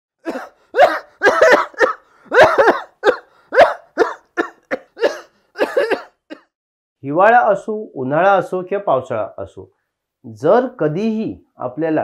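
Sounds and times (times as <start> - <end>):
person coughing: 0.2 - 6.5.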